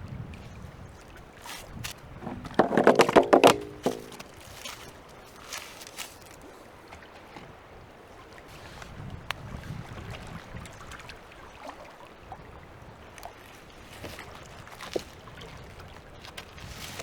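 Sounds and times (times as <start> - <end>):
water sloshing and trickling: 0.3 - 17.0
sharp knocks: 2.2 - 4.3.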